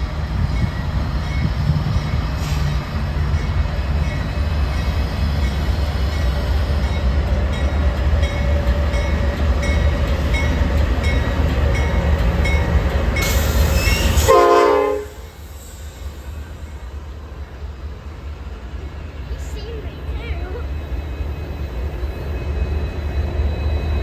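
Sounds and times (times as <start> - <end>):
diesel locomotive rumbling: 0.0 - 24.0
locomotive bell ringing: 0.5 - 14.4
train horn: 13.7 - 15.4.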